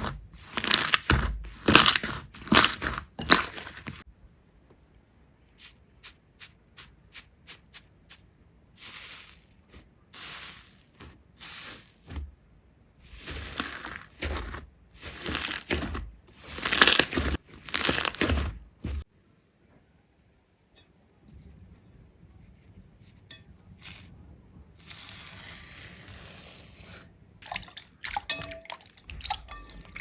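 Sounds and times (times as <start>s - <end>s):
slime squishing: 0.0s - 4.0s, 13.0s - 19.1s
dull thuds: 14.2s - 19.1s.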